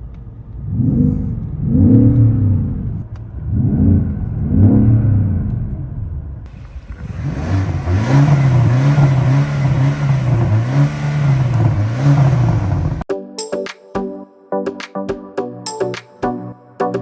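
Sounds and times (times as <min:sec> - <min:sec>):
car engine revving: 0:00.2 - 0:13.1.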